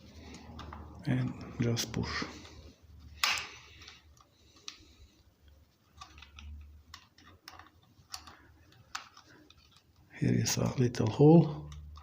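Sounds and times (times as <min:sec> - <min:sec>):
plastic parts clicking: 0:03.2 - 0:10.1.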